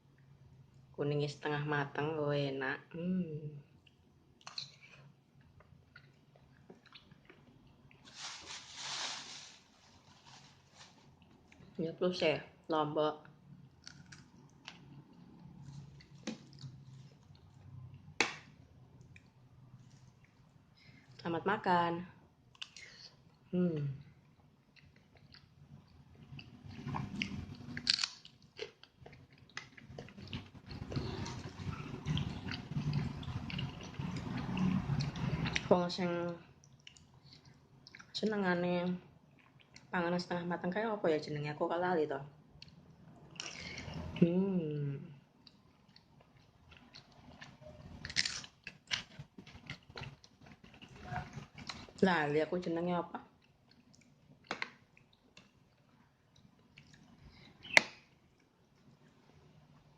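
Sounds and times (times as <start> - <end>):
chewing with wet clicks: 3.8 - 8.0, 13.6 - 18.4, 19.0 - 20.5, 22.5 - 23.4, 24.0 - 35.7, 36.6 - 38.3, 39.2 - 40.0, 42.5 - 44.2, 45.4 - 52.0, 53.3 - 59.0.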